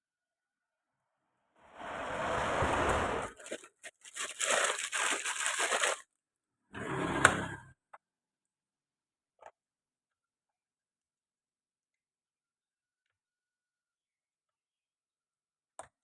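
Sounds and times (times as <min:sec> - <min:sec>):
tearing crinkling noise: 0:03.2 - 0:06.1.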